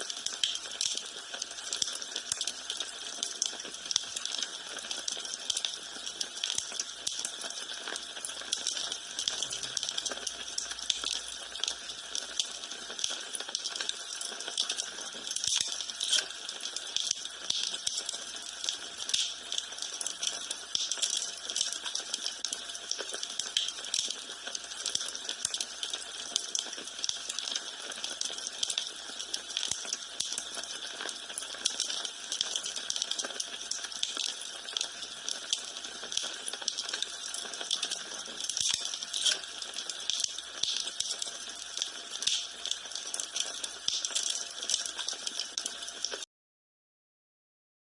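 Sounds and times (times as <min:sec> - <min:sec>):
wood fire crackling: 0:00.1 - 0:46.2.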